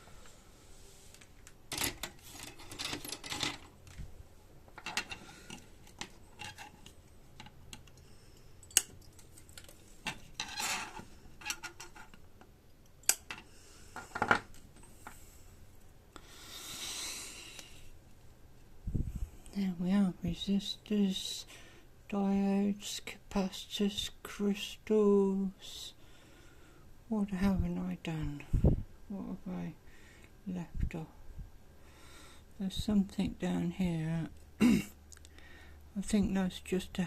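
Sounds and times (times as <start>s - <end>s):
soft hiss: 0.0s - 2.6s, 12.6s - 34.5s
hand tools clicking and clinking: 8.6s - 12.2s.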